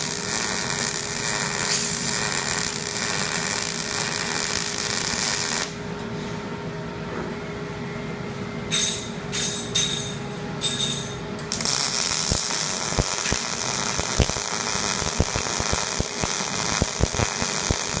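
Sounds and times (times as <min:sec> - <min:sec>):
welding arc hissing and crackling: 0:00.0 - 0:05.8, 0:11.5 - 0:18.0
steady low hum: 0:00.0 - 0:18.0
high whine bursts: 0:11.6 - 0:18.0.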